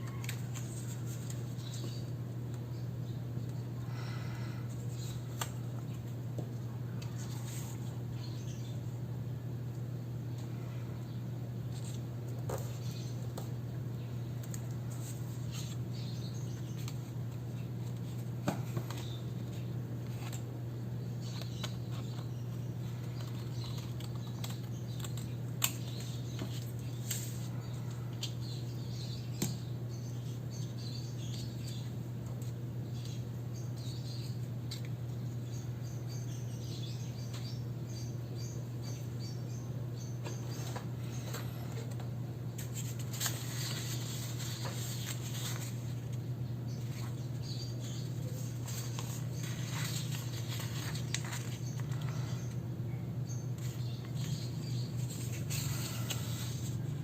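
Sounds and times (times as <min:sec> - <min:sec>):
steady low hum: 0:00.0 - 0:57.0
stationery rustling: 0:40.2 - 0:52.6, 0:53.4 - 0:57.0.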